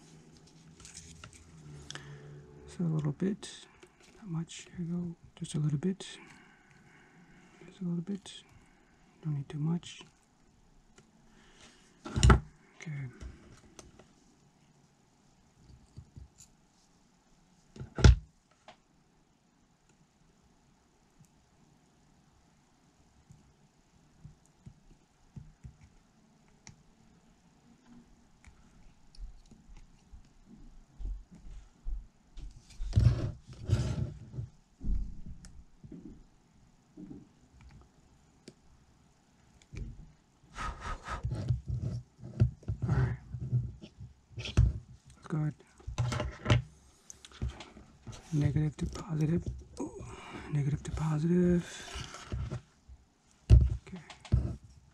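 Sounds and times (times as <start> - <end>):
handling knocks and scraping: 50.8 - 52.7, 53.4 - 54.8.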